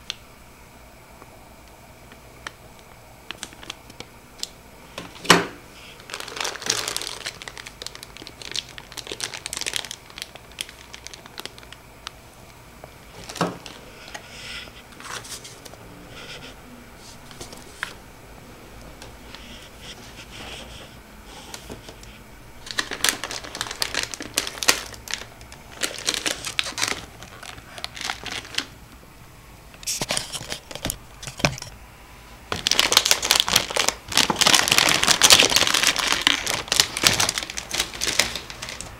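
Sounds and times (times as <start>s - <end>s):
crinkling crumpling handling noise: 3.3s - 18.0s, 18.8s - 28.8s, 29.8s - 31.8s, 32.5s - 38.9s.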